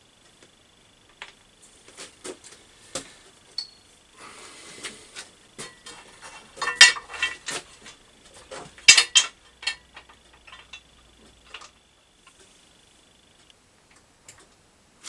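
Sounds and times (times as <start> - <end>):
metallic clinks and knocks: 3.6 - 3.9, 5.6 - 11.8.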